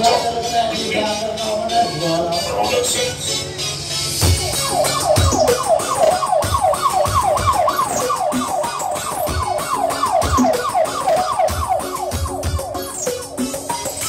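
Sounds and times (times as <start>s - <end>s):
electronic dance music: 0.0s - 14.0s
siren-like synth sweeps: 0.0s - 14.0s
thumping kick drum: 4.2s - 4.6s, 5.2s - 5.6s.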